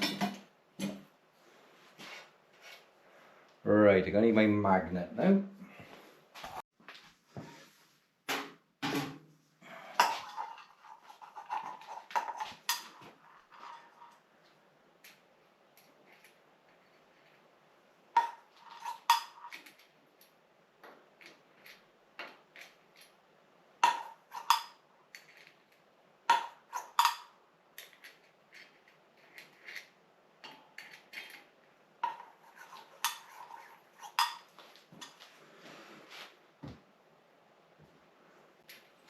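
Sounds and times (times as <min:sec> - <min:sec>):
bicycle parts clinking on metal: 0:26.3 - 0:28.8.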